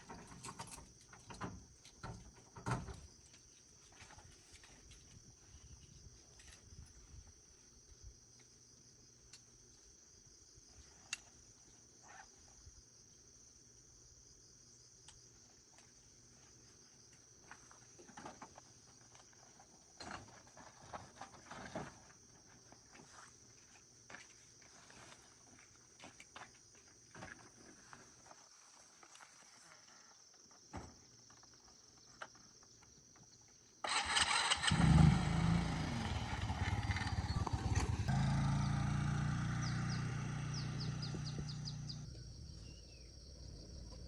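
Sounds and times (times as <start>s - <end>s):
rustles: 0.0s - 8.5s, 15.7s - 32.9s.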